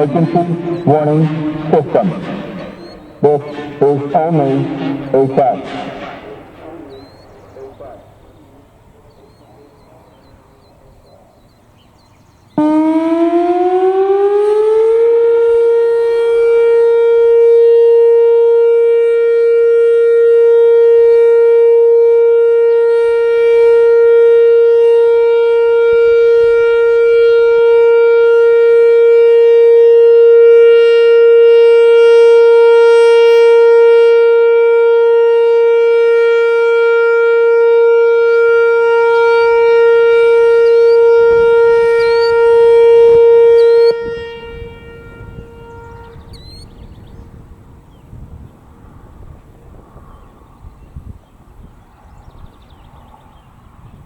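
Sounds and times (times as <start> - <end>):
warning siren rising to steady tone: 0.0 - 11.5, 12.5 - 46.8.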